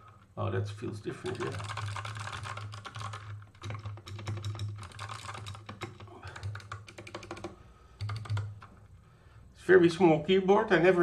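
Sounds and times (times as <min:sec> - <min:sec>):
mechanical keyboard typing: 0:01.2 - 0:08.8.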